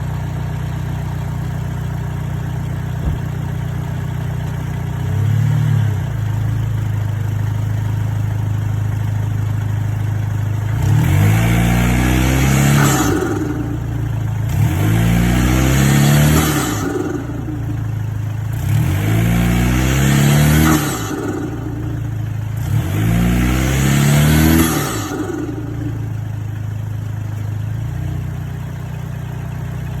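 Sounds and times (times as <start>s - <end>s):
car engine revving: 2.9s - 3.4s, 10.6s - 27.5s.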